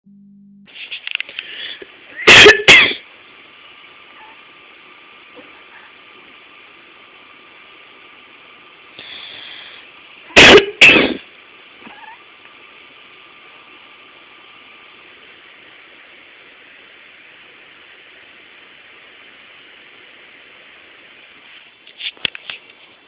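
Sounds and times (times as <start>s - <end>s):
steady hiss: 0.7s - 23.0s
person coughing harshly: 2.2s - 3.0s, 10.4s - 11.2s
cat mewing faintly: 4.1s - 4.5s, 11.8s - 12.3s.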